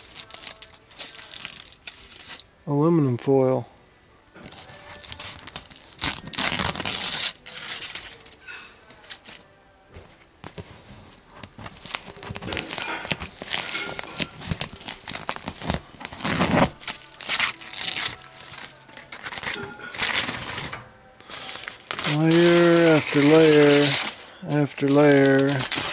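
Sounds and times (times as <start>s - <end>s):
aluminum foil crinkling and tearing: 0.0s - 2.5s, 4.4s - 9.5s, 10.4s - 25.9s.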